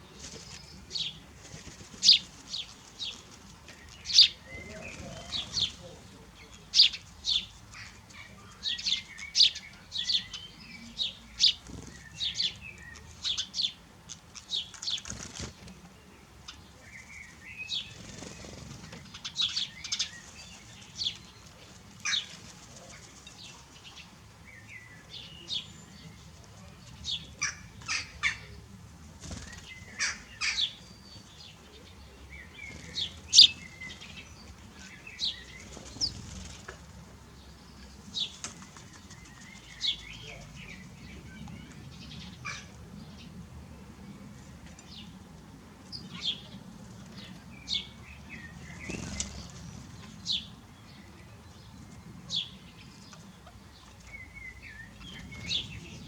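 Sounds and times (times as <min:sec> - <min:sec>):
small birds chirping: 0:00.0 - 0:56.0
wing fluttering: 0:48.8 - 0:49.7.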